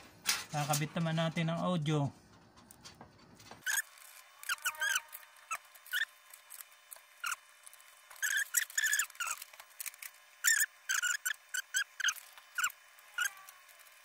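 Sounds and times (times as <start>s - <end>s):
animal chirps and squeaks: 3.6s - 6.6s, 7.2s - 7.5s, 8.1s - 14.0s.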